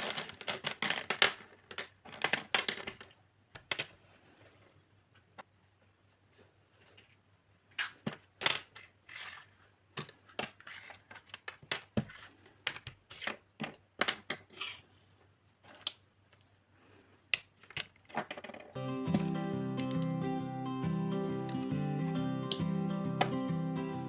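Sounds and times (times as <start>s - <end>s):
plastic toy pieces clicking: 0.0s - 4.0s.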